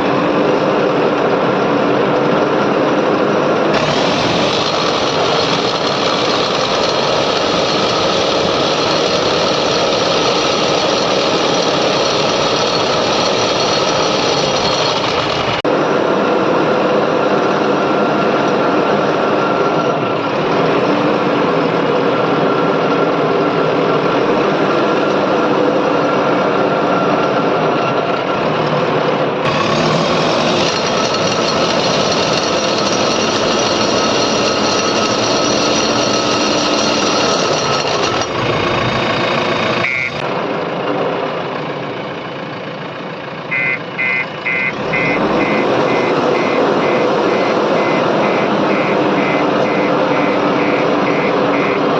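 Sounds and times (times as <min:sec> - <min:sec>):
diesel engine running: 0:00.0 - 0:28.4, 0:29.2 - 0:51.9
reversing alarm beeping: 0:39.5 - 0:40.2, 0:43.5 - 0:51.9.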